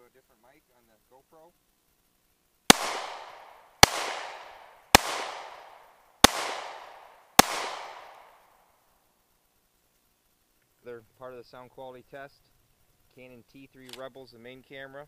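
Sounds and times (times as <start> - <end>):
pistol shots with echo: 2.7 - 8.4.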